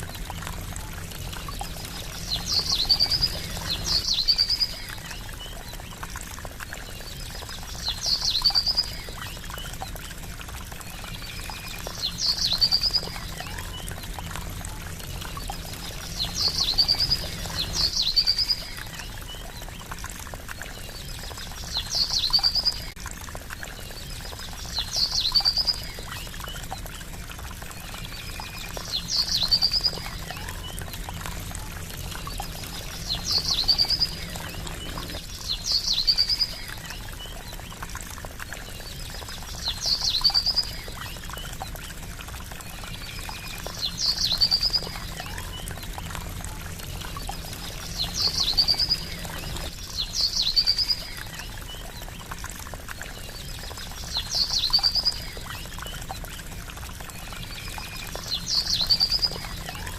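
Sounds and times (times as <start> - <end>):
water trickling: 0.0 - 59.9.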